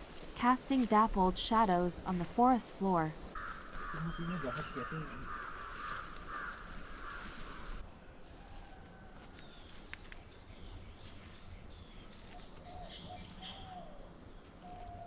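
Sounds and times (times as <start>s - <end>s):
outdoor background noise: 0.0s - 15.0s
birds calling faintly: 3.1s - 7.8s.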